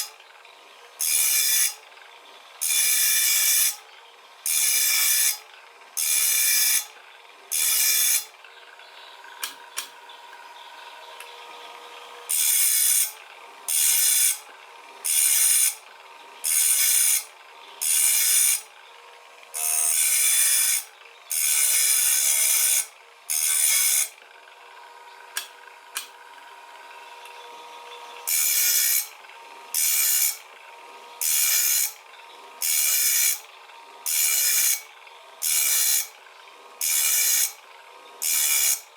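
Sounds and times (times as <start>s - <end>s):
grinding wheel grinding saw teeth: 0.0s - 38.9s.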